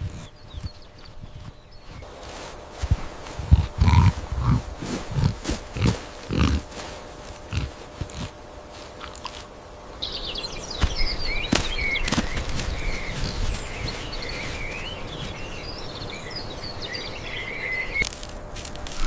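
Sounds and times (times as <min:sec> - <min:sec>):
birds chirping: 0:00.0 - 0:19.0
short low animal calls: 0:03.4 - 0:08.4.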